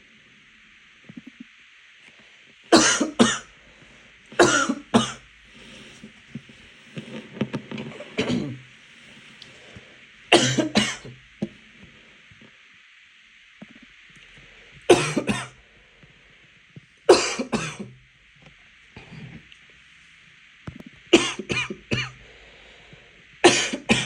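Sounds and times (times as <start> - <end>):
person coughing hard: 2.8 - 3.5, 4.4 - 5.2, 8.2 - 8.6, 10.3 - 11.1, 14.9 - 15.5, 17.1 - 17.9, 21.2 - 22.2, 23.4 - 24.0.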